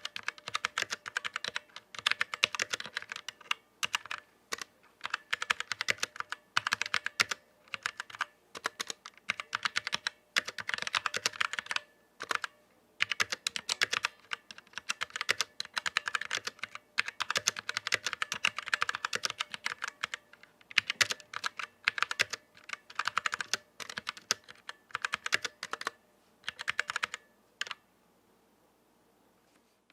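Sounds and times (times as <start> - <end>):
mechanical keyboard typing: 0.0 - 27.8.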